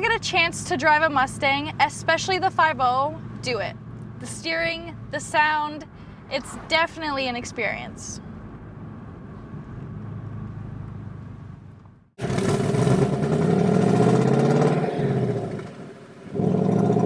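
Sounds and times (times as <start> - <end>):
car engine accelerating: 8.4 - 17.0.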